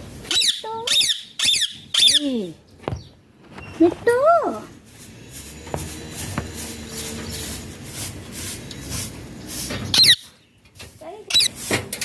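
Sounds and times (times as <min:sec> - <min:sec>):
parakeet squawk: 0:00.3 - 0:02.2
bird rustling and scratching: 0:03.4 - 0:12.0.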